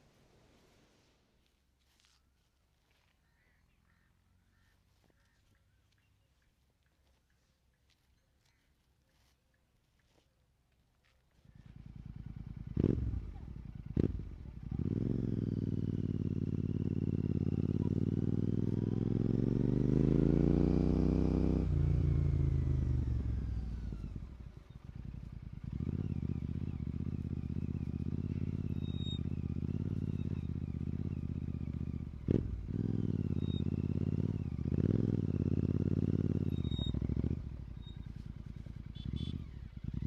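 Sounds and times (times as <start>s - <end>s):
motorcycle engine revving: 11.4s - 40.0s.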